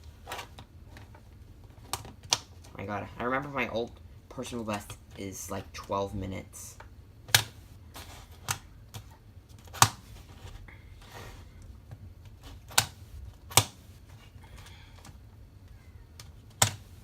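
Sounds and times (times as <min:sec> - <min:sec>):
puzzle cube plastic clicking: 0:12.2 - 0:13.8, 0:16.2 - 0:17.0.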